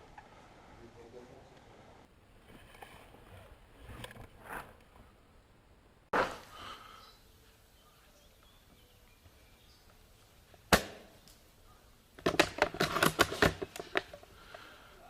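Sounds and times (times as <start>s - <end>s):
airsoft rifle shot: 10.7s - 11.1s.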